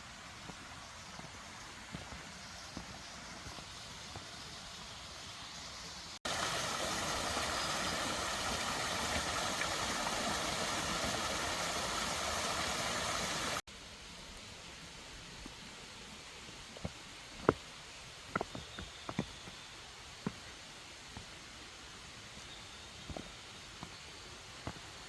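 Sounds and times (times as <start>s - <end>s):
stream rushing over rocks: 6.2s - 13.6s.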